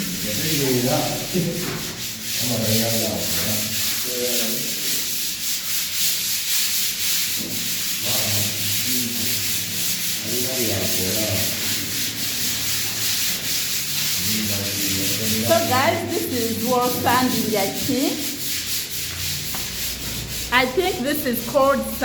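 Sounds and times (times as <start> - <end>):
sanding a wall: 0.0 - 22.0.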